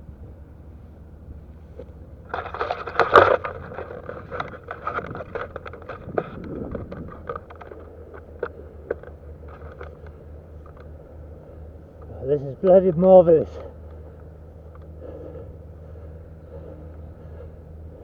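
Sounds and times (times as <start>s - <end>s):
dry grass crunching and rustling: 2.2s - 10.9s.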